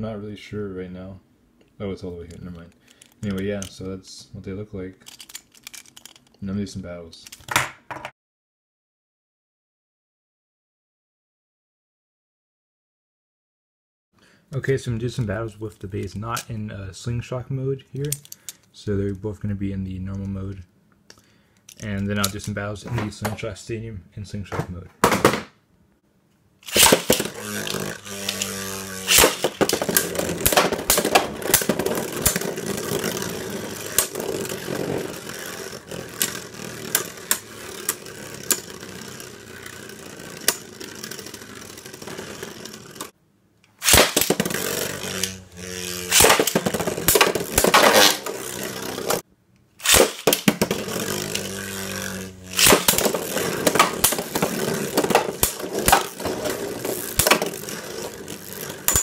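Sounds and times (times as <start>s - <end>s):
spinning tops clacking together: 5.0s - 6.4s, 26.6s - 43.1s, 43.8s - 49.2s, 49.8s - 59.0s
spinning tops whirring: 26.6s - 43.2s, 43.8s - 49.2s, 49.8s - 59.0s.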